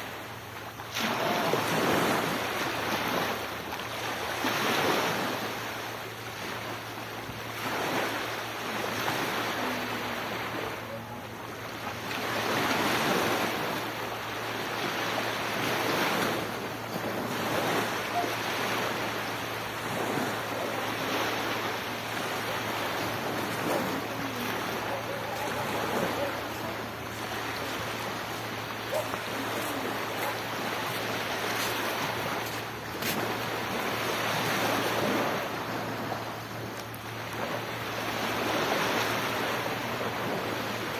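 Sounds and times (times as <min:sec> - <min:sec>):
sea waves breaking on beach: 0:00.0 - 0:40.9.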